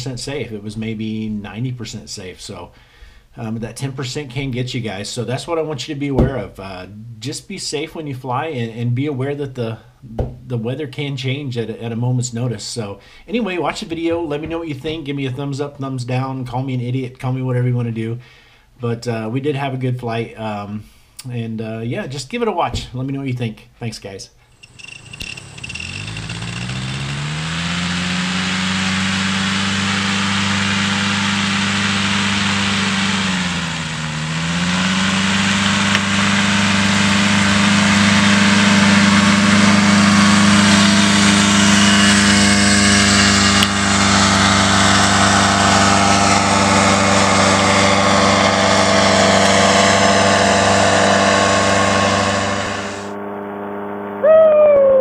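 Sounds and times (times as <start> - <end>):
paramotor engine and propeller: 24.5 - 54.2.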